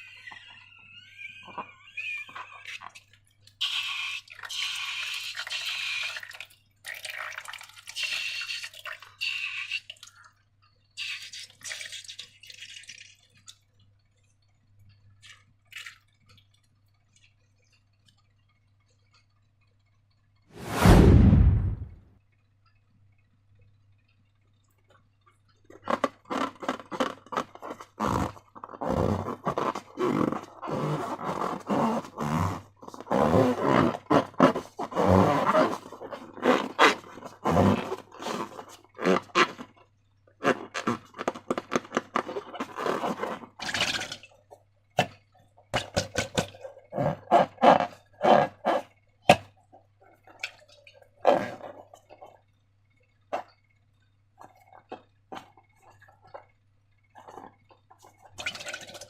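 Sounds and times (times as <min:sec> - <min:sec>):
rubbery squeaks and squelches: 0:00.0 - 0:06.2, 0:25.8 - 0:39.8, 0:40.4 - 0:44.2, 0:45.7 - 0:49.4, 0:50.1 - 0:52.4.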